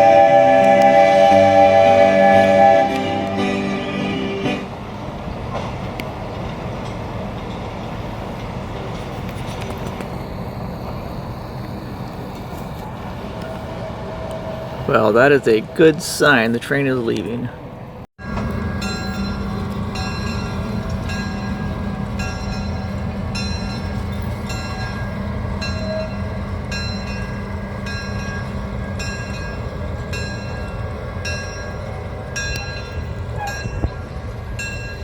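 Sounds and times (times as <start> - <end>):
locomotive humming: 0.0 - 35.0
train bell ringing: 18.2 - 35.0.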